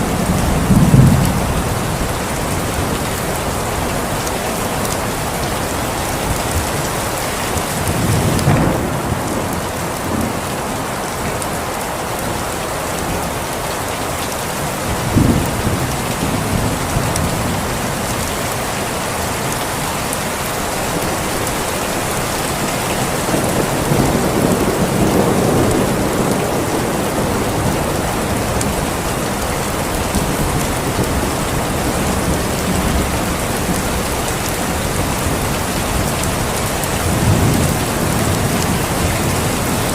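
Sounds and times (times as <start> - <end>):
thunder rumbling: 0.0 - 11.5, 20.8 - 39.9
heavy rain falling: 0.0 - 39.9.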